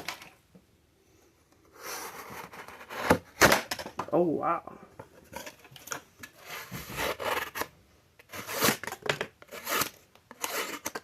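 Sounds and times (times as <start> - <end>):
kitchen knife scraping: 9.5 - 11.0.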